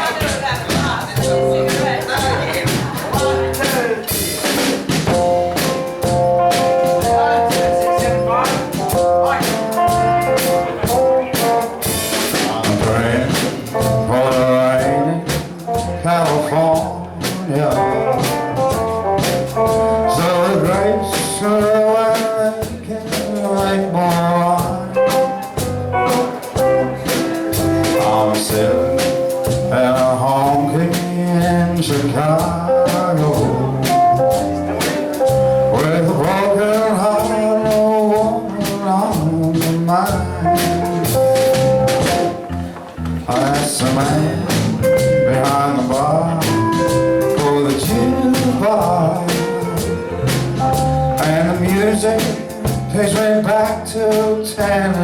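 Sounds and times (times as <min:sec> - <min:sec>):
wavering melodic lead line: 0:00.0 - 0:16.1
drum kit beat: 0:00.0 - 0:55.0
live country band playing: 0:00.0 - 0:55.0.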